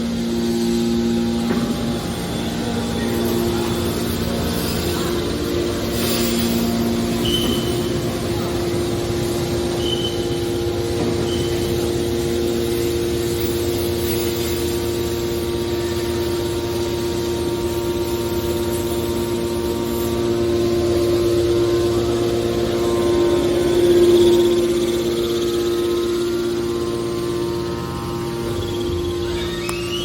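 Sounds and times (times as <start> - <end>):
baler machine hum: 0.0 - 30.0.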